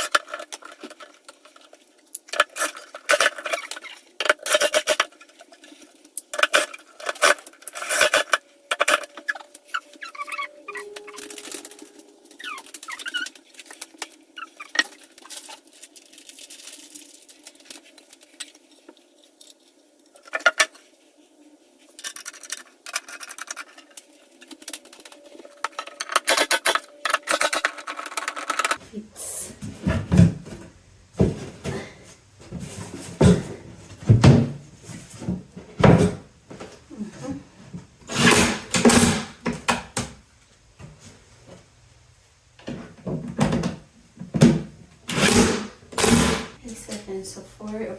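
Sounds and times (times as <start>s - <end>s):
bed parts clicking and knocking: 24.6s - 28.8s, 29.6s - 36.7s, 38.0s - 40.2s, 42.6s - 47.1s.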